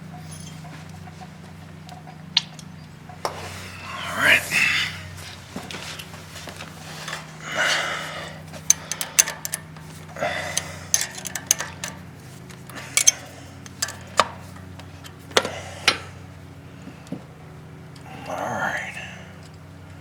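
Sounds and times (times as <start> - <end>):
metal scraping: 0.0 - 15.2
low steady hum: 0.0 - 20.0
metallic clicks and clanks: 8.6 - 16.0.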